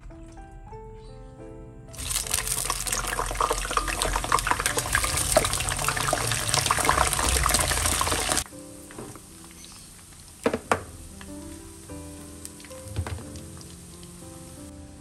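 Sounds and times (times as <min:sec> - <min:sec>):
small splashes and drips: 0:02.0 - 0:08.5
water running from tap: 0:02.0 - 0:08.5.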